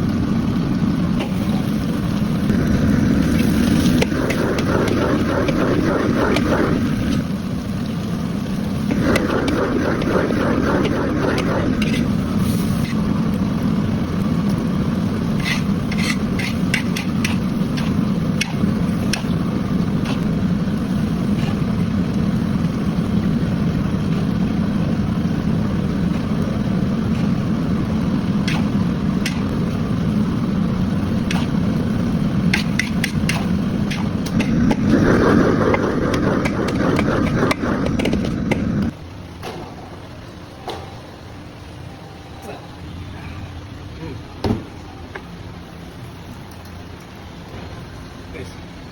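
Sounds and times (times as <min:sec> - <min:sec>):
gas burner roar: 0:00.0 - 0:44.1
metal spatula scraping wok: 0:15.3 - 0:17.5.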